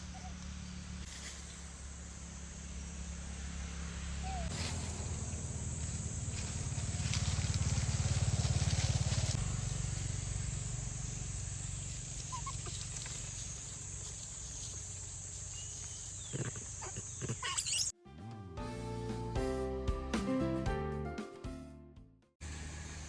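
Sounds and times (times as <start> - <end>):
music: 18.0 - 22.4.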